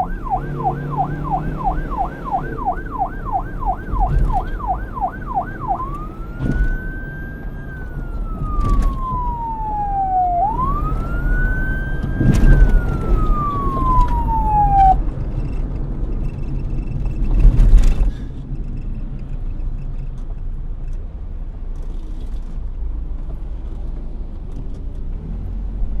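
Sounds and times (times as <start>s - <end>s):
police siren wailing: 0.0s - 15.0s.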